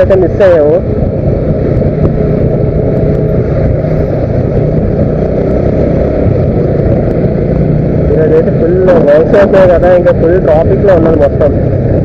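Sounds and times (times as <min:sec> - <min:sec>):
vehicle engine and road noise: 0:00.0 - 0:12.0.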